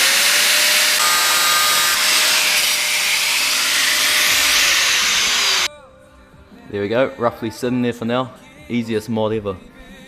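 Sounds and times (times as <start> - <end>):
power tool running: 0.0 - 5.7.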